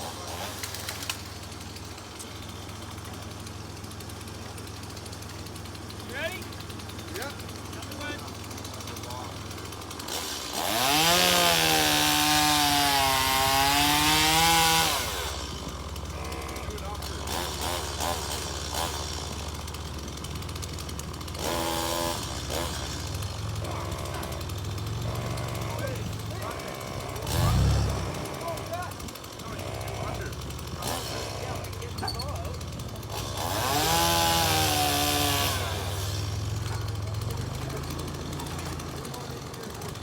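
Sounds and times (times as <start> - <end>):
electric motor whining: 21.3 - 37.8.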